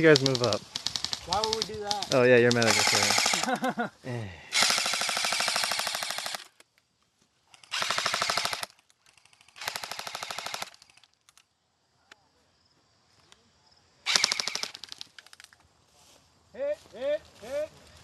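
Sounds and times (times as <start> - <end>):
airsoft guns firing bursts: 0.0 - 3.5, 4.6 - 6.5, 7.6 - 11.0, 14.1 - 15.1.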